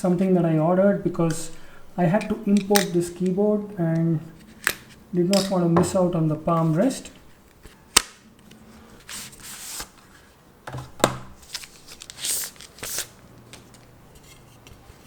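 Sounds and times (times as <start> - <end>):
wrapping rustling and tearing: 11.4 - 14.5.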